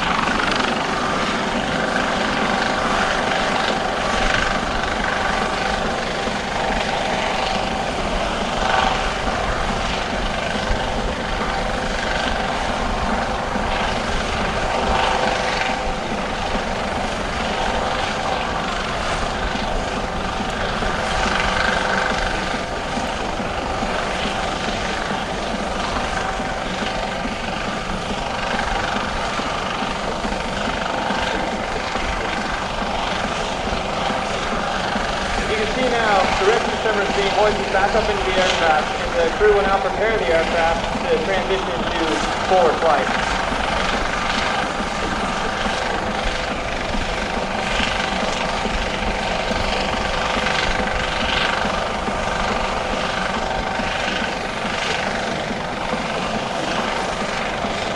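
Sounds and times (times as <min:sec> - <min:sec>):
helicopter rotor hovering: 0:00.0 - 0:57.9
turbine engine whine: 0:00.0 - 0:57.9.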